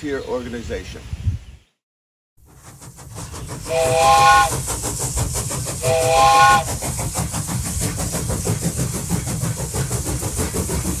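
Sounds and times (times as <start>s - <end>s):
wooden train whistle: 3.7s - 4.6s, 5.8s - 6.8s.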